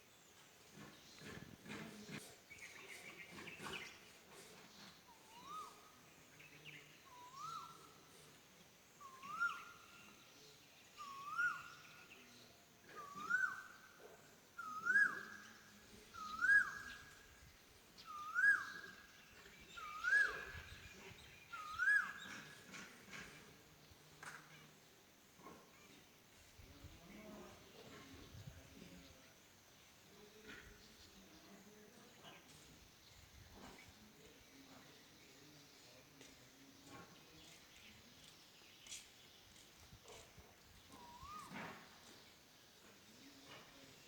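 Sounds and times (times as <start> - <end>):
cuckoo calling: 13.0 - 13.8, 14.6 - 15.5, 16.2 - 17.2, 18.0 - 19.0, 19.7 - 20.7, 21.5 - 22.7, 41.0 - 41.8.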